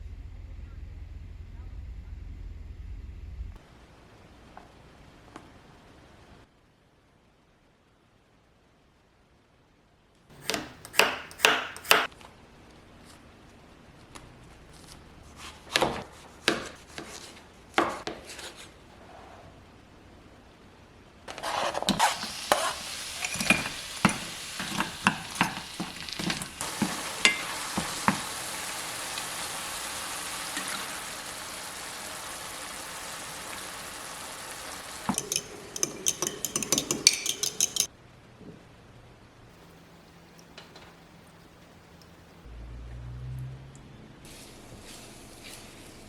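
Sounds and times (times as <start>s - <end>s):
utensils knocking: 10.4s - 12.1s, 23.1s - 28.4s, 35.0s - 37.9s
utensil scraping a pan: 21.3s - 28.4s
food sizzling in a frying pan: 22.0s - 37.9s.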